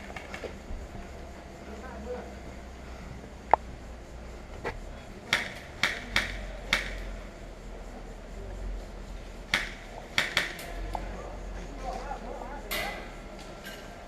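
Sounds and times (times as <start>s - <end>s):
sharp clicks and snaps: 3.4s - 3.7s.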